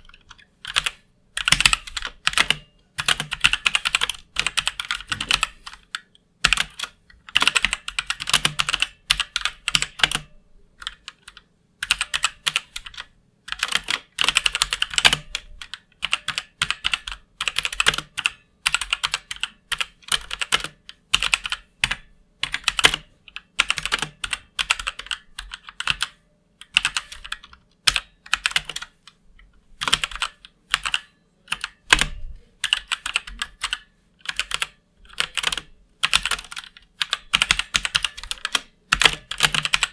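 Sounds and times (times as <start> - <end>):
mechanical keyboard typing: 0.0 - 29.1, 29.8 - 39.9.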